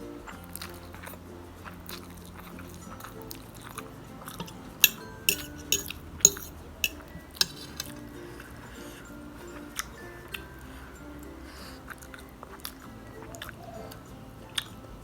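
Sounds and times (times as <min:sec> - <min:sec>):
quiet background music: 0:00.0 - 0:15.0
cutlery clinking against a dish: 0:02.7 - 0:08.1.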